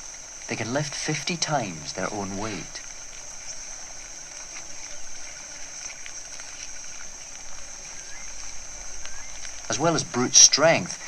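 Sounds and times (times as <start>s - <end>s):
steady high-pitched hiss: 0.0s - 11.0s
faint clicks and rustles: 2.4s - 11.0s.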